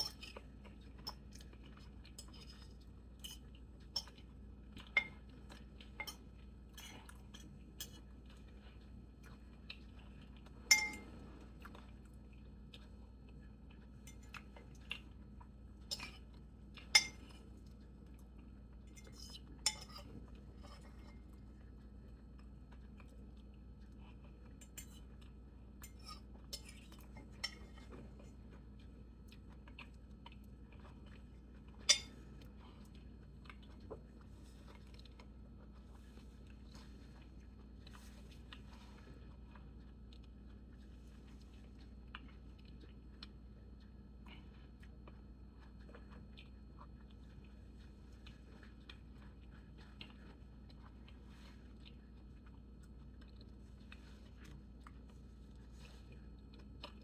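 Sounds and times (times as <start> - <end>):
cutlery clinking on a plate: 10.7 - 11.1, 16.9 - 17.3, 19.0 - 21.2, 31.8 - 32.2.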